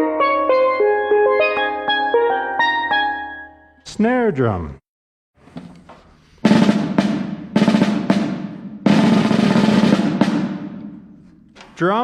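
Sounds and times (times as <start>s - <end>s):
snare drum taps and strokes: 5.6s - 11.8s
snare drum roll: 6.4s - 11.2s.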